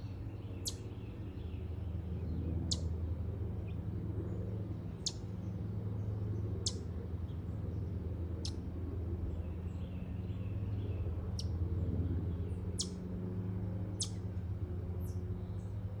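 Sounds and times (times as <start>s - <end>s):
low steady hum: 0.0s - 16.0s
chipmunk chipping: 14.0s - 14.2s.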